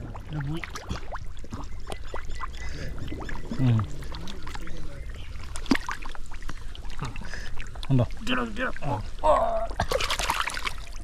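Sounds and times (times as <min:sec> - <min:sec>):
water splashing and pouring: 0:00.0 - 0:11.0
low voice sounds: 0:08.7 - 0:09.8.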